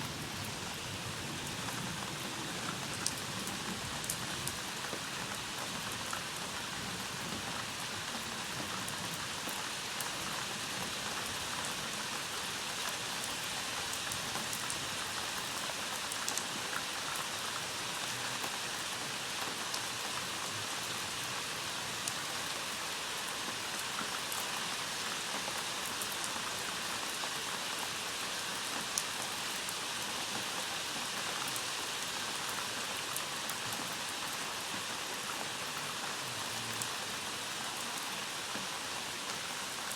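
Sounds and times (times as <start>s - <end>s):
steady rain hiss: 0.0s - 39.9s
raindrops ticking on surface: 1.4s - 20.3s.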